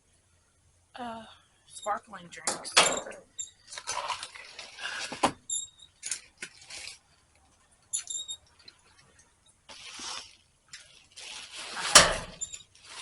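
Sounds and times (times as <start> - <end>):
trash rustling and scraping: 2.8 - 13.0
short high squeaks: 12.3 - 12.7.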